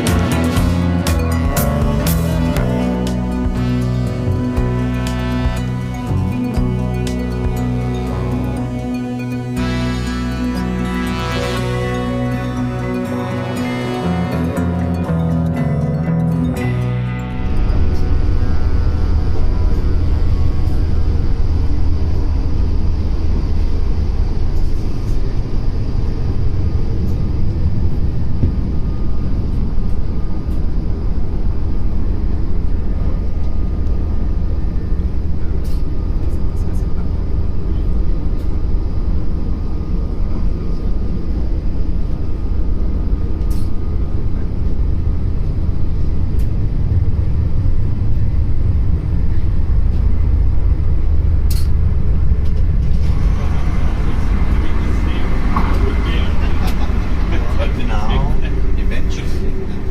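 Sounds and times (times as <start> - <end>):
train rumbling: 17.2 - 59.9.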